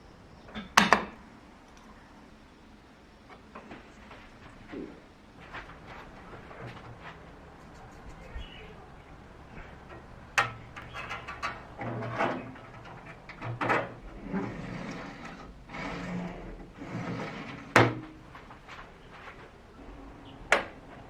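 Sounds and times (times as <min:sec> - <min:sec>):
scraping and handling noise: 0:09.5 - 0:19.6
sharp clicks and knocks: 0:09.8 - 0:14.0.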